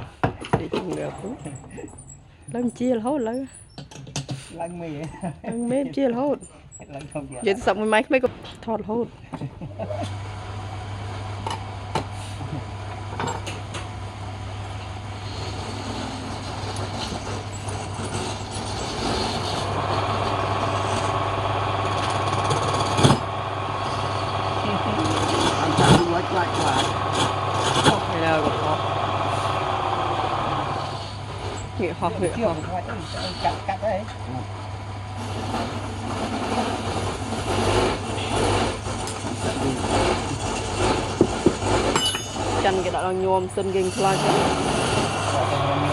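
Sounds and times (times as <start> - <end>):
woodworking machine humming: 9.2 - 45.9.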